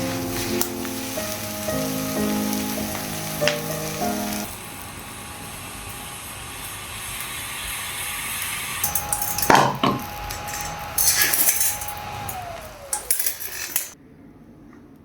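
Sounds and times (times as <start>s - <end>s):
metal cookware clinking: 0.0s - 4.5s, 8.8s - 14.0s
steady hiss: 0.0s - 14.0s.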